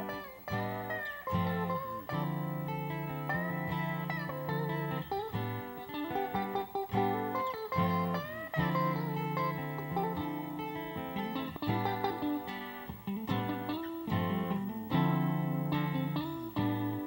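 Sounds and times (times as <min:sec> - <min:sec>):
guitar-led instrumental music: 0:00.0 - 0:17.0.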